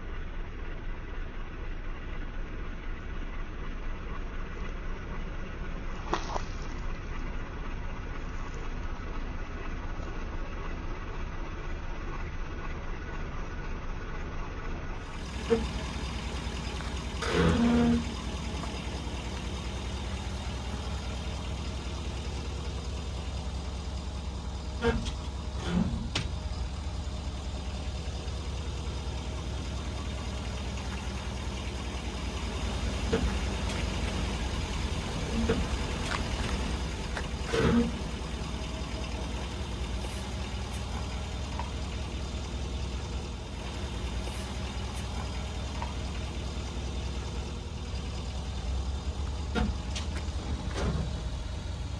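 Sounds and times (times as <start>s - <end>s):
pickup engine humming: 15.0s - 51.9s.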